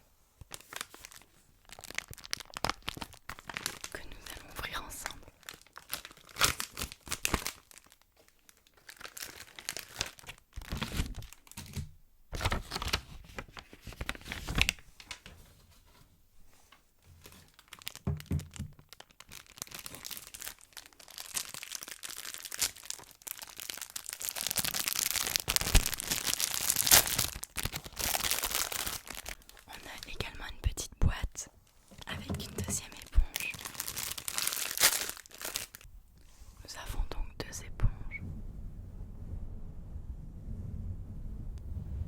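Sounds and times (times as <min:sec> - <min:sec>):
packaging being torn open: 0:00.5 - 0:03.9, 0:05.4 - 0:14.8, 0:17.4 - 0:29.6, 0:32.5 - 0:35.9
packaging crinkling: 0:00.5 - 0:15.3, 0:17.2 - 0:30.5, 0:31.6 - 0:35.9
soft thumps: 0:31.9 - 0:33.1.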